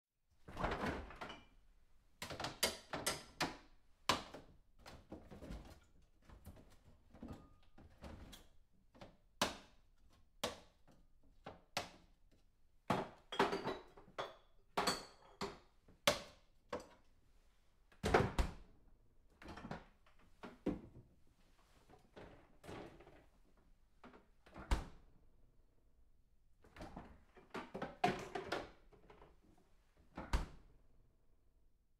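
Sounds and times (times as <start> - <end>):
items clattering in a refrigerator: 0.5 - 1.6, 4.2 - 9.2, 12.9 - 16.0, 19.3 - 21.0, 21.9 - 23.3, 26.7 - 29.4.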